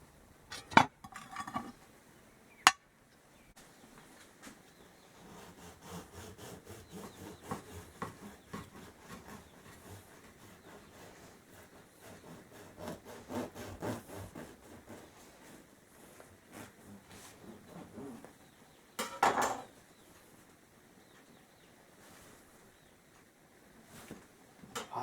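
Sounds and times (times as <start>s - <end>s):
knife sawing through bread: 5.0s - 18.0s.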